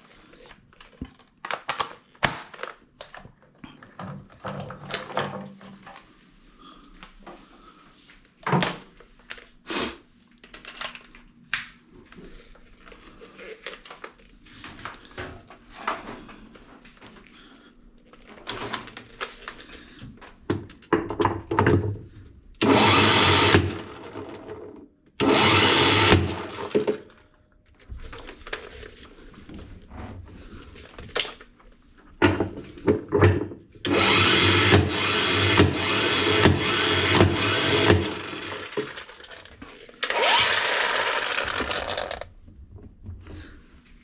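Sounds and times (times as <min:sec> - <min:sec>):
power wrench bursts: 0:22.6 - 0:24.3, 0:25.2 - 0:27.0, 0:33.9 - 0:39.2, 0:40.0 - 0:42.2
tools clicking and knocking: 0:26.5 - 0:27.2, 0:32.2 - 0:42.3.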